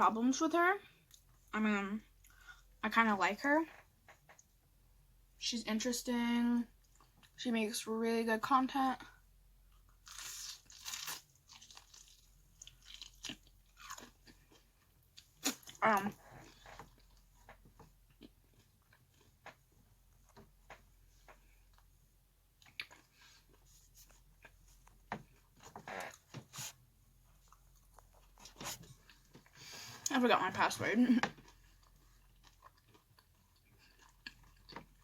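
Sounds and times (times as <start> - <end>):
person chewing crispy food: 9.7 - 15.8, 16.4 - 19.4, 22.6 - 26.7, 31.4 - 35.0.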